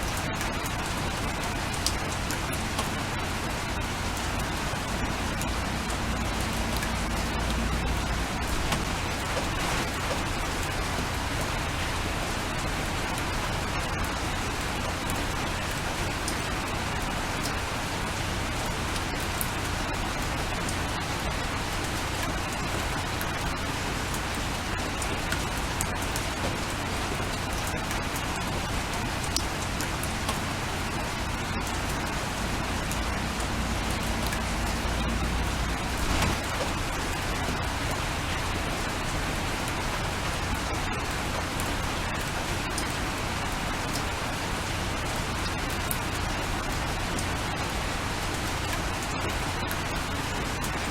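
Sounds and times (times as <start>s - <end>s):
steady rain falling: 0.0s - 50.9s.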